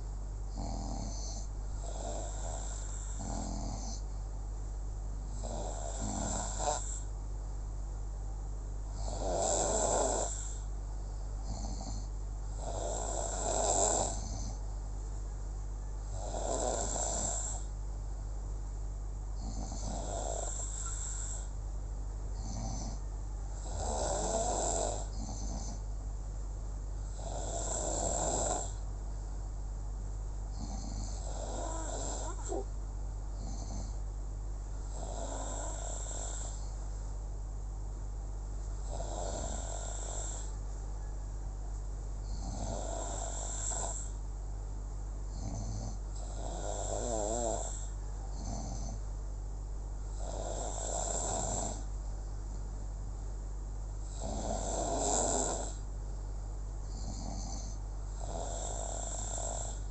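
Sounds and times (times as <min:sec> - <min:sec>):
steady low hum: 0:00.0 - 0:59.9
person snoring: 0:00.5 - 0:04.0, 0:05.4 - 0:07.1, 0:08.9 - 0:10.7, 0:11.4 - 0:14.6, 0:16.1 - 0:17.7, 0:19.4 - 0:21.5, 0:23.6 - 0:25.8, 0:27.1 - 0:28.8, 0:30.5 - 0:32.7, 0:34.9 - 0:36.7, 0:38.8 - 0:40.5, 0:42.3 - 0:44.2, 0:45.3 - 0:49.0, 0:50.2 - 0:51.9, 0:54.0 - 0:55.8, 0:56.9 - 0:59.9.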